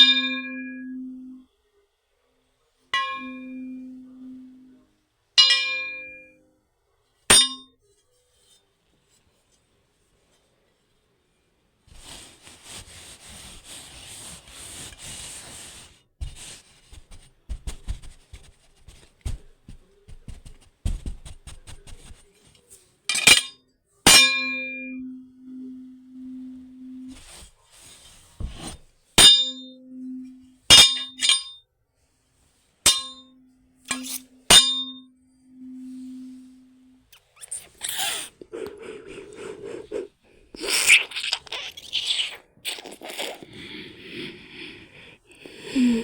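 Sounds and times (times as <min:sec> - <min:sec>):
ringing metal clangs: 0:00.0 - 0:01.1, 0:03.0 - 0:04.4, 0:05.4 - 0:06.4, 0:07.3 - 0:07.7, 0:23.1 - 0:25.2, 0:29.2 - 0:31.6, 0:32.9 - 0:37.0.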